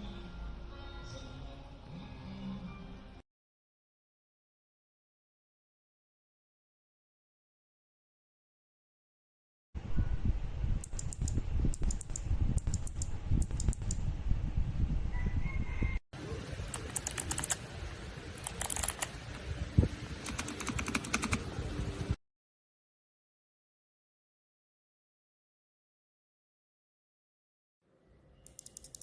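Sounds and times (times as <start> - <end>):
clicky keyboard switches: 10.8 - 14.0, 16.8 - 17.6, 18.4 - 19.1, 20.2 - 21.4, 28.5 - 29.0.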